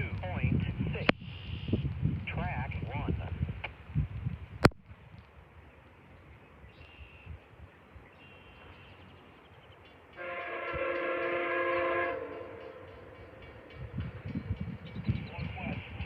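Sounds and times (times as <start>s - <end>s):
locomotive horn chord: 10.1s - 14.0s.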